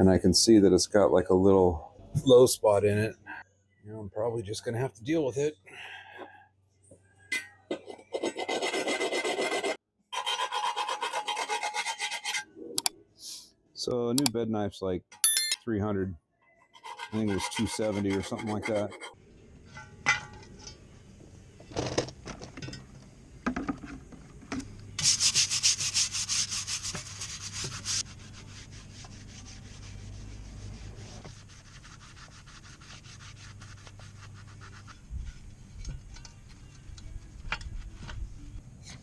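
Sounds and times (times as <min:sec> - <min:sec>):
file rasping on metal: 0:07.9 - 0:12.5, 0:16.7 - 0:19.2.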